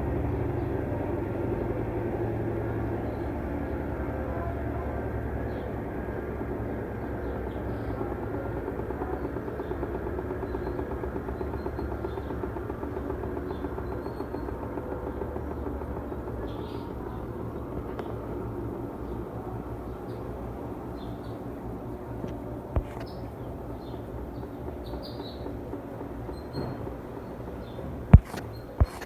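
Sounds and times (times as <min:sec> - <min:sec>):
washing machine spinning: 0:00.0 - 0:29.0.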